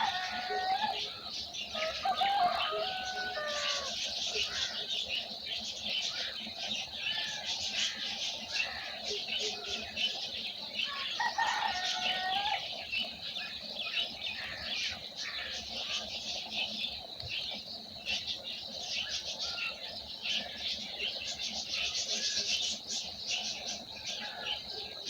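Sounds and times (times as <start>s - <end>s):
rooster crowing: 0.0s - 1.1s, 1.8s - 4.0s, 10.9s - 12.6s
small birds chirping: 0.0s - 25.0s.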